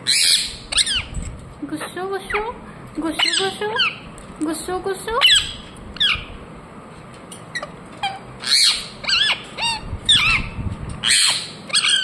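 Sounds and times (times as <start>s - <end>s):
parrot giving harsh calls: 7.6s - 12.0s.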